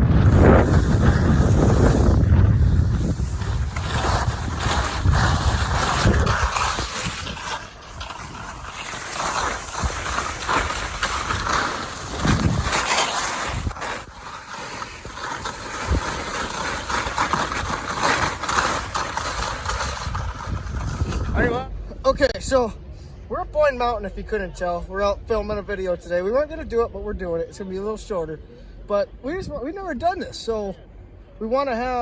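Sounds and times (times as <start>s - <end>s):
wind rushing over microphone: 0.0s - 14.2s, 17.4s - 21.7s.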